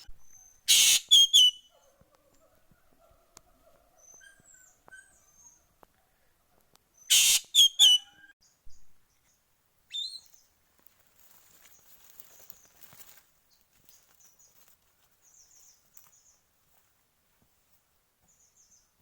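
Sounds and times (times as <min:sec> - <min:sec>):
bird harsh call: 0:00.7 - 0:01.6, 0:07.1 - 0:08.2
short rising bird call: 0:07.1 - 0:08.1.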